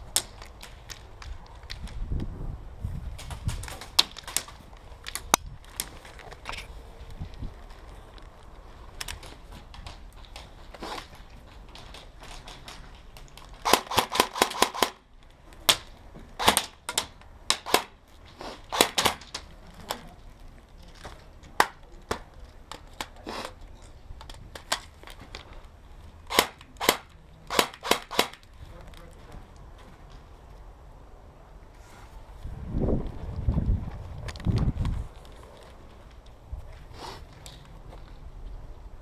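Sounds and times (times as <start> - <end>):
airsoft guns firing: 13.6 - 15.1, 15.7 - 18.0, 18.7 - 19.3, 26.3 - 28.4.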